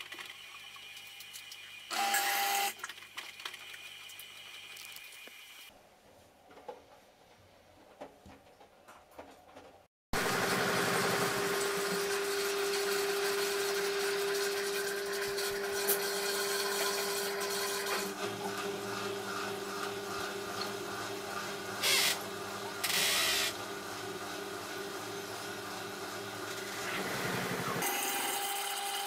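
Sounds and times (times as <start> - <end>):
washing machine motor whine: 0.5 - 2.8, 10.2 - 29.0.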